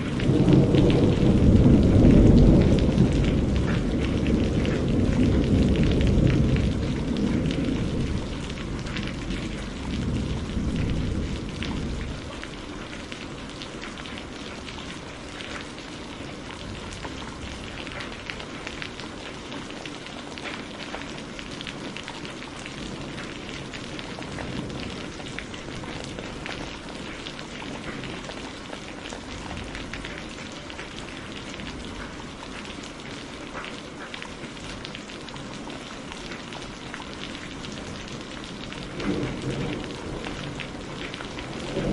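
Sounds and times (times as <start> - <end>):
low thunder rumble: 0.0 - 15.6, 22.6 - 28.3, 37.5 - 41.9
rain falling: 0.0 - 41.9.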